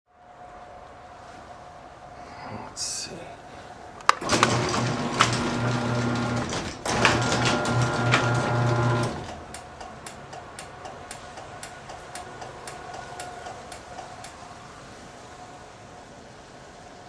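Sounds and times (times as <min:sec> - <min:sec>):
faint regular clicking: 0:04.0 - 0:14.4
garage door motor humming: 0:04.0 - 0:14.4.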